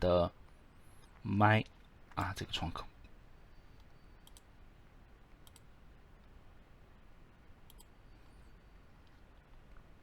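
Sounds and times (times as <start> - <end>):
low room hiss: 0.0 - 10.0
computer mouse clicking: 3.8 - 4.5, 5.4 - 5.7, 7.6 - 8.0.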